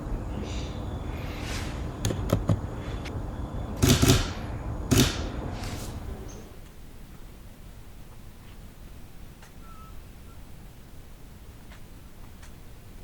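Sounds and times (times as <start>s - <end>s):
sharp clicks: 3.8s - 5.3s
swishing handling noises: 5.4s - 6.5s.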